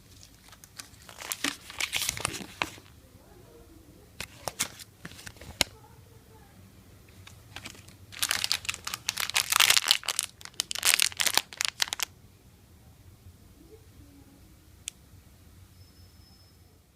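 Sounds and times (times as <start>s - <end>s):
wrapper crinkling: 0.0s - 2.9s, 7.2s - 12.1s.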